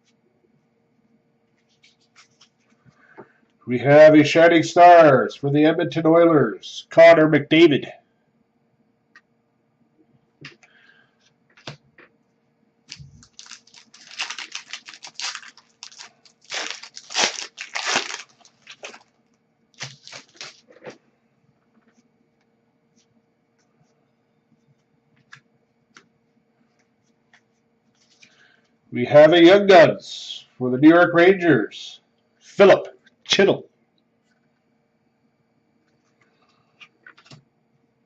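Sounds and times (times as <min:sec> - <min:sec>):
foil wrapper crinkling and tearing: 0:12.9 - 0:19.2, 0:19.8 - 0:21.0.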